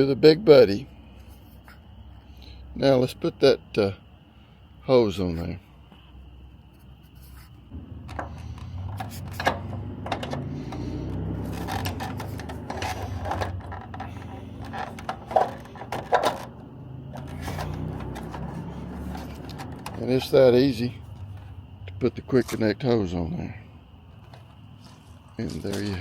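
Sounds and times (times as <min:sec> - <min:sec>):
hose fitting clicking and scraping: 0:08.0 - 0:20.4.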